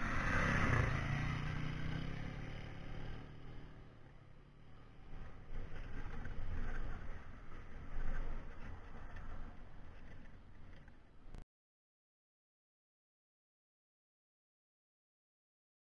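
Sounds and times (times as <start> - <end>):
motorcycle engine running: 0.0 - 9.4.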